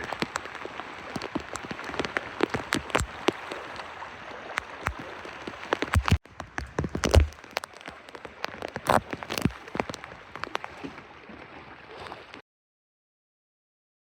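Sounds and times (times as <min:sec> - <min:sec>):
raindrops hitting close: 0:00.0 - 0:11.0
steady rain patter: 0:00.0 - 0:11.0.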